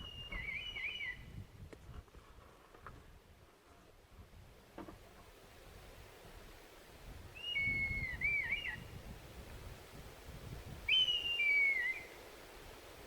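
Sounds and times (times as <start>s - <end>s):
bird whistled calls: 0.0s - 1.4s, 7.4s - 8.9s, 10.9s - 12.2s.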